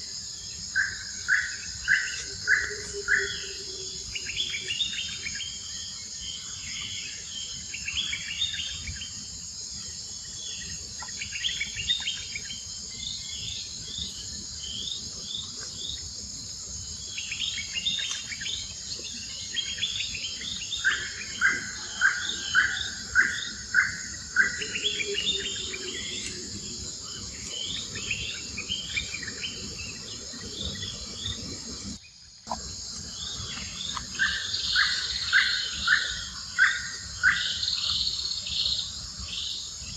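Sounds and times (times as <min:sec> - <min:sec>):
high insect drone: 0:00.0 - 0:39.9.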